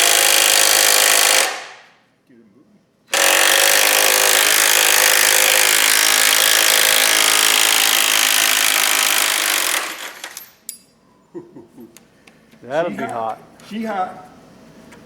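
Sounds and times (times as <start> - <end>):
power tool cutting steel: 3.1 - 10.4.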